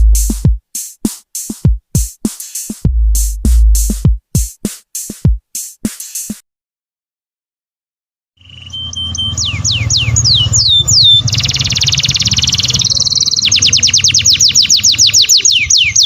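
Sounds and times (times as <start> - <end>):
drum machine beat: 0.0 - 6.4.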